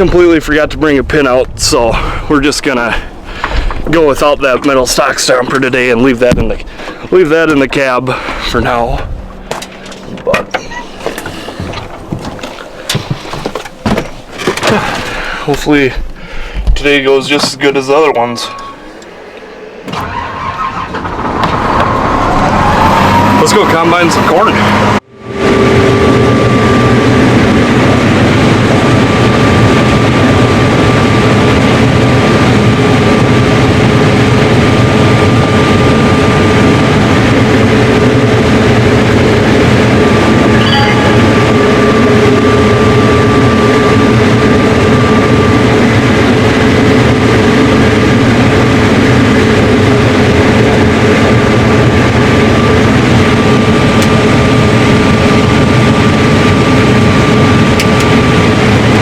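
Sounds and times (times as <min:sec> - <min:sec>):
constant whine: 0:00.0 - 0:59.0
combine harvester running: 0:01.8 - 0:59.0.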